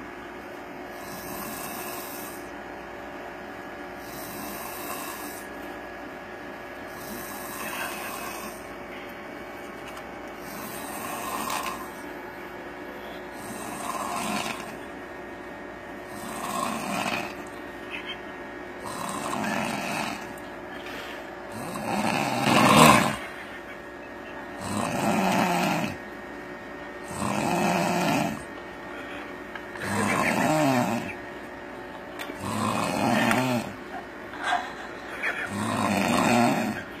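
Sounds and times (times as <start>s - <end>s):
man snoring: 0.9s - 2.5s, 4.0s - 5.5s, 6.9s - 8.7s, 10.4s - 12.1s, 13.2s - 14.9s, 16.0s - 17.6s, 18.8s - 20.4s, 21.5s - 23.4s, 24.6s - 26.0s, 27.0s - 28.5s, 29.8s - 31.2s, 32.2s - 33.9s, 35.2s - 37.0s.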